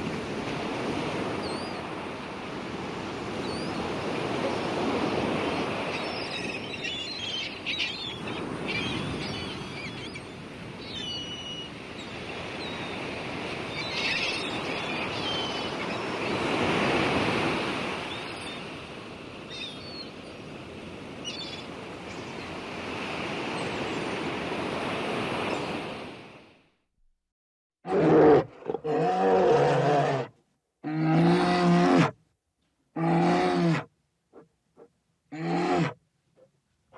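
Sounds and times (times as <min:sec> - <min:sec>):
waves washing in and out: 0:00.0 - 0:26.7
small birds chirping: 0:05.9 - 0:16.6.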